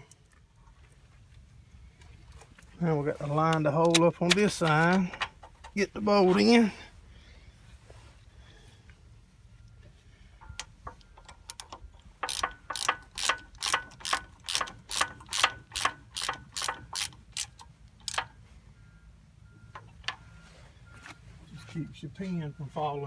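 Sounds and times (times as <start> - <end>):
ratchet wrench clicking: 11.3 - 18.3.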